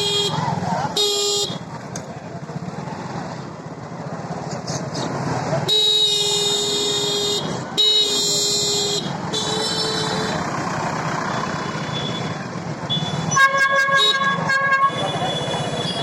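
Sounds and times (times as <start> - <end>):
engine rumble: 0.0 - 13.4
vehicle horn honking: 5.7 - 10.4, 12.9 - 16.0.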